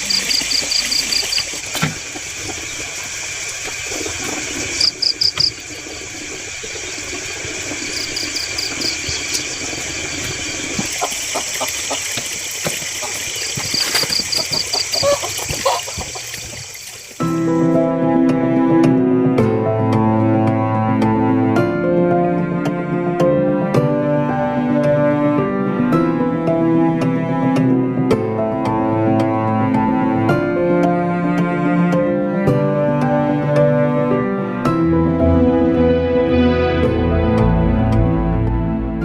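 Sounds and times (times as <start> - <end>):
high insect buzz: 4.4 - 5.8, 7.3 - 15.8
chickens clucking: 10.7 - 16.7.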